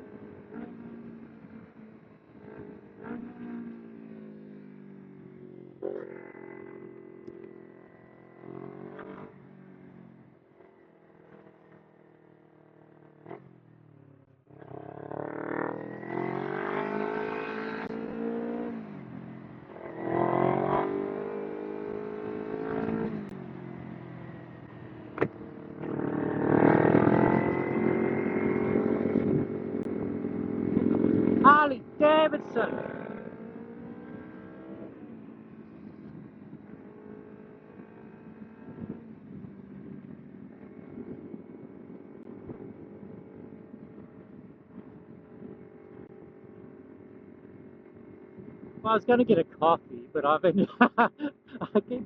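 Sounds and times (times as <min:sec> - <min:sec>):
motorcycle engine revving: 0:00.0 - 0:05.1, 0:05.7 - 0:11.9, 0:13.1 - 0:41.4.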